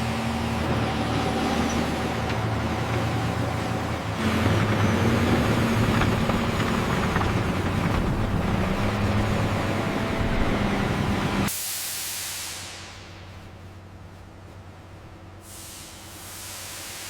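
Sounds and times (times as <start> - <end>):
diesel engine humming: 0.0 - 11.5
air hissing out: 11.5 - 13.3, 15.4 - 17.0.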